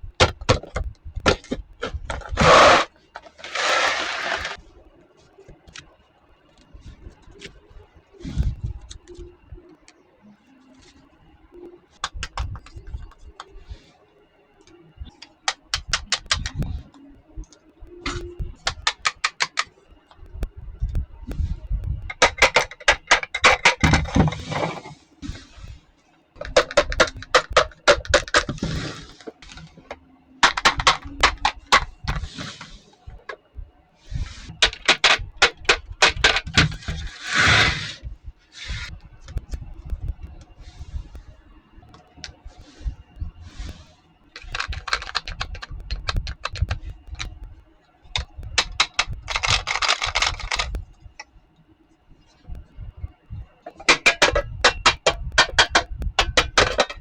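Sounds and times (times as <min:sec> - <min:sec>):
plastic toy pieces clicking and rattling: 0:00.2 - 0:04.6, 0:15.2 - 0:25.4, 0:26.4 - 0:33.4, 0:34.1 - 0:38.0, 0:44.4 - 0:47.4, 0:48.1 - 0:50.9, 0:53.7 - 0:57.0
rustling or scraping: 0:01.4 - 0:04.6.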